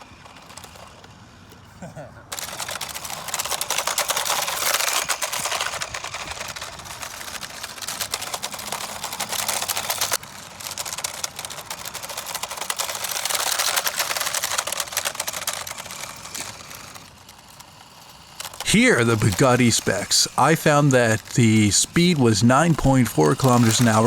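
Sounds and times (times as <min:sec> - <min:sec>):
toy car tyres rattling over gravel: 0:02.3 - 0:18.7.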